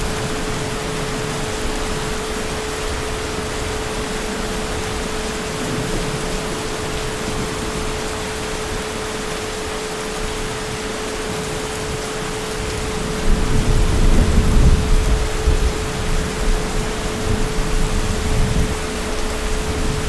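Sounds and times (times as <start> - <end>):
heavy rain: 0.0 - 20.0.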